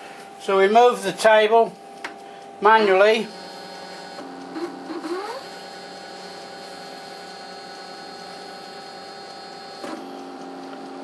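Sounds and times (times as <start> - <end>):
lathe electrical hum and whine: 0.0 - 11.0.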